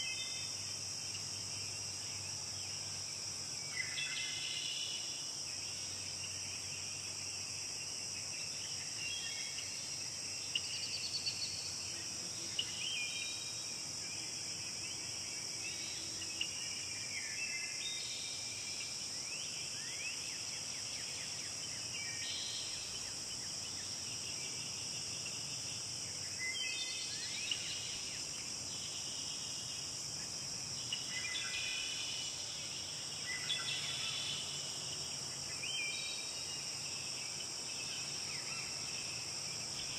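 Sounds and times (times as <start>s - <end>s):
insects chirring: 0.0s - 39.9s.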